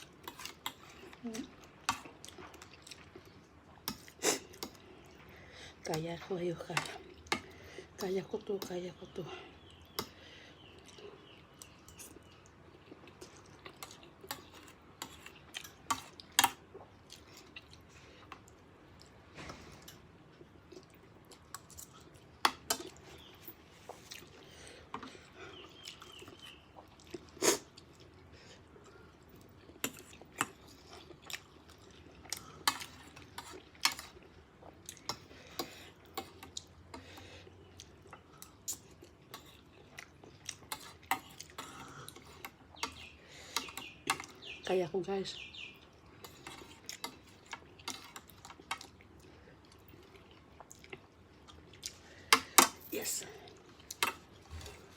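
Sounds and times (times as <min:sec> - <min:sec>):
person chewing: 0:00.0 - 0:05.3, 0:10.8 - 0:19.2, 0:19.8 - 0:44.4, 0:45.8 - 0:54.9.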